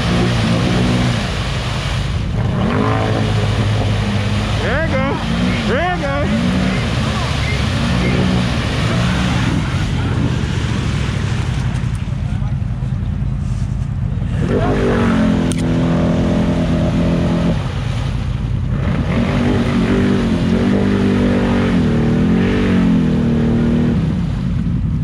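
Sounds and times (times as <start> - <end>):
atv engine revving: 0.0 - 13.4, 14.0 - 25.0
steady low rumble: 0.0 - 25.0.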